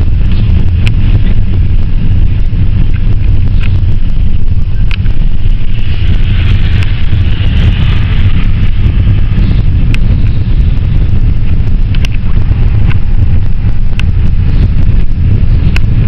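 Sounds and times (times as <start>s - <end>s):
van engine and road rumble: 0.0s - 16.0s
short rattles and clicks: 11.4s - 13.1s.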